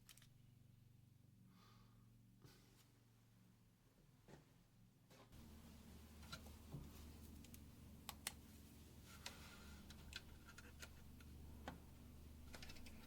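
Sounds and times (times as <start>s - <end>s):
steady low hum: 4.7s - 13.0s.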